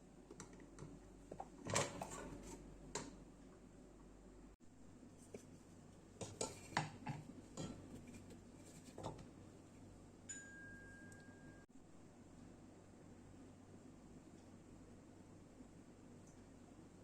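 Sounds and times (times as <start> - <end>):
faint high steady tone: 10.2 - 11.7.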